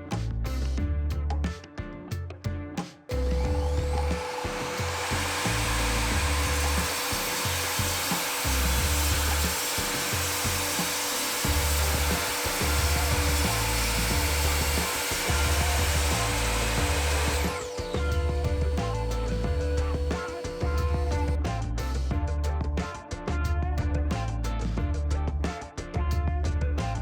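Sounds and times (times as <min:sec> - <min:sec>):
mitre saw cutting wood: 0:03.1 - 0:21.4.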